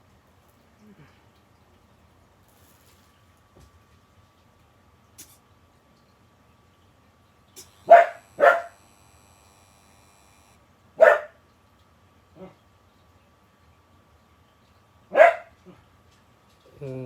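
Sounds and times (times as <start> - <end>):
dog barking: 7.8 - 8.7, 11.0 - 11.4, 15.1 - 15.5.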